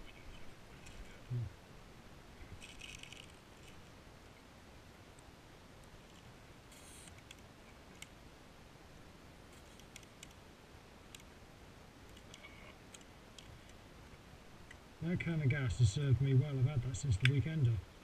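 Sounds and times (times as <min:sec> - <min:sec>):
pistols and magazines clicking: 0:02.6 - 0:03.8.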